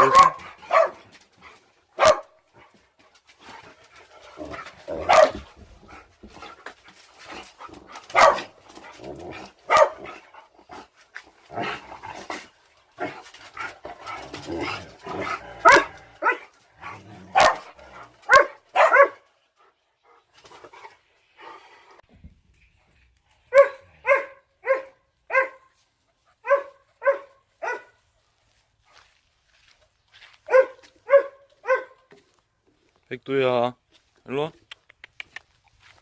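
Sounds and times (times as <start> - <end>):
dog barking: 0.0 - 1.1, 2.0 - 2.4, 5.0 - 5.4, 8.1 - 8.5, 9.7 - 10.2, 15.6 - 16.5, 17.3 - 17.7, 18.3 - 19.3, 23.5 - 25.7, 26.4 - 28.0, 30.5 - 32.1.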